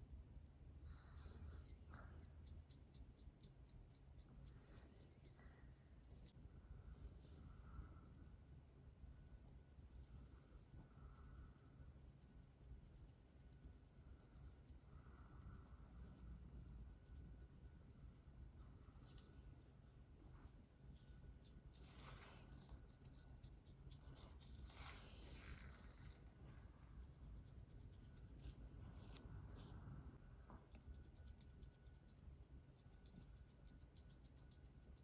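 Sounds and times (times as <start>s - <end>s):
fingernails scratching scalp: 21.0s - 29.3s.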